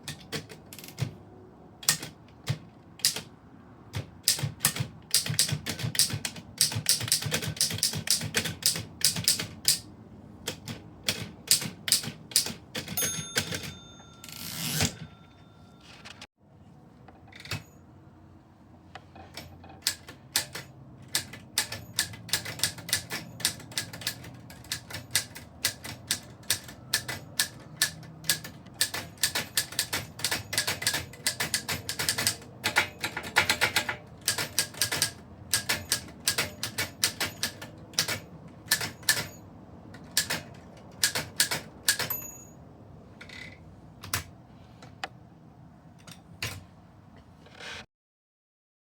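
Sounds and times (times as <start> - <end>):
typewriter keys clacking: 3.9 - 9.8, 10.5 - 15.1, 19.4 - 39.4, 40.0 - 42.3.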